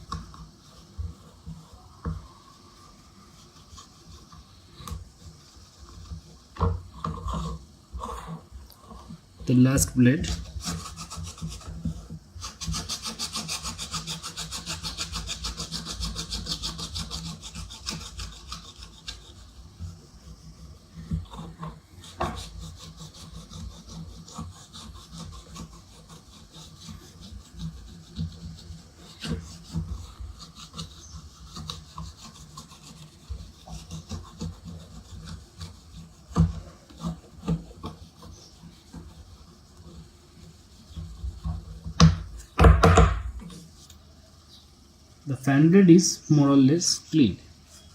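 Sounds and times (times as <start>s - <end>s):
cloth scrubbing fan blade: 0.0s - 42.4s.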